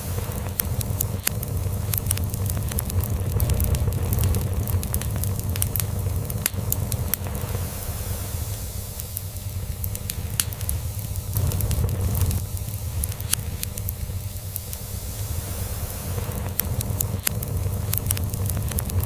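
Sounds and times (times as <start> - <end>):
wood fire crackling: 0.0 - 19.0.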